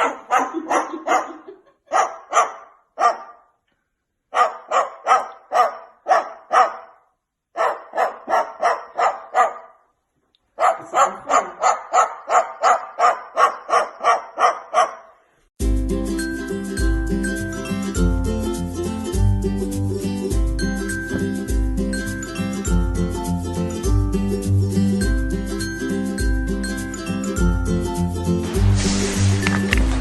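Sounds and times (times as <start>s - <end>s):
dog barking: 0.0s - 3.6s, 4.3s - 9.9s, 10.5s - 15.2s.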